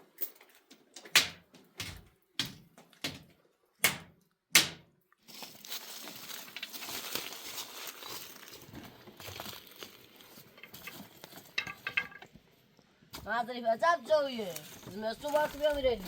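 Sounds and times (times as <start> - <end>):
sharp knocks: 1.1 - 4.8
crackling rustling noise: 5.2 - 12.0, 14.2 - 16.0.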